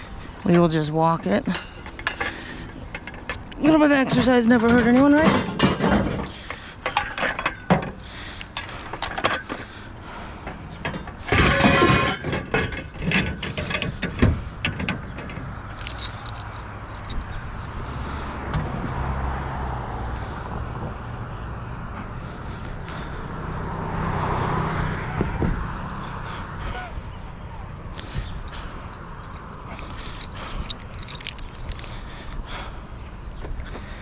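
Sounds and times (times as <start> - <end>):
passing road traffic: 0.0 - 34.0
knocks and rattles: 1.4 - 9.7, 10.4 - 17.4, 29.8 - 32.0
clattering rush: 1.5 - 17.4, 29.7 - 32.1.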